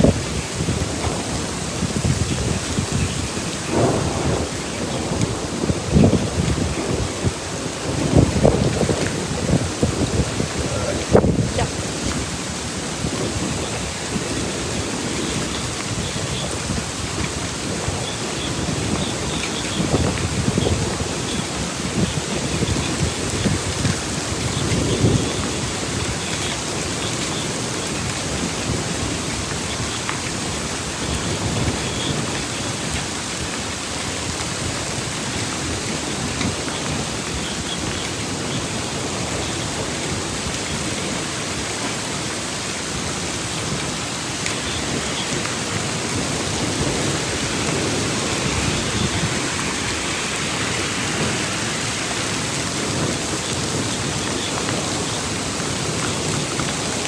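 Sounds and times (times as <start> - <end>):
heavy rain falling: 0.0 - 57.0
thunder rumbles: 0.0 - 57.0.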